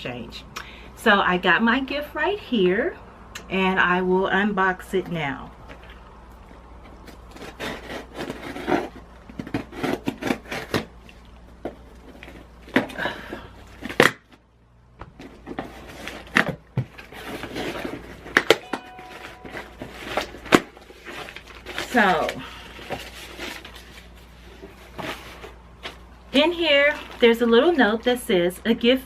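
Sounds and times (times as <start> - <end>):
wrapping rustling: 15.2 - 28.6.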